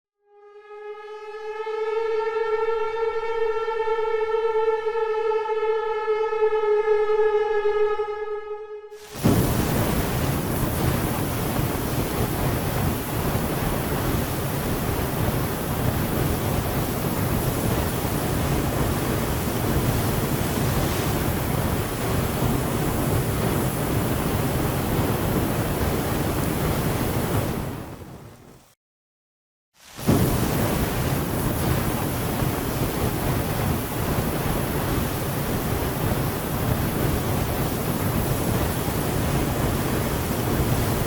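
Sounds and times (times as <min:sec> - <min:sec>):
dense rushing noise: 0:09.0 - 0:28.4, 0:29.8 - 0:41.0.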